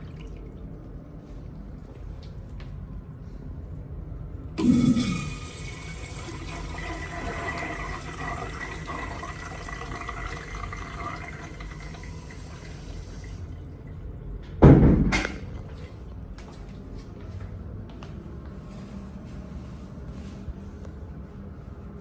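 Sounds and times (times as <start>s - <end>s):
toilet flushing: 0.0s - 0.9s, 4.6s - 14.2s
loud thump: 14.6s - 15.2s.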